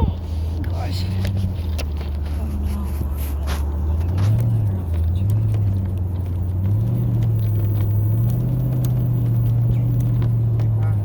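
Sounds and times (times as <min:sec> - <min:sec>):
vehicle engine under load: 0:00.0 - 0:11.0.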